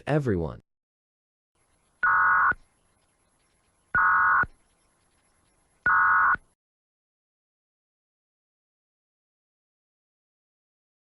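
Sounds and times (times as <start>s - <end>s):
buzzing electronic data tone: 2.0s - 2.6s, 3.4s - 6.4s.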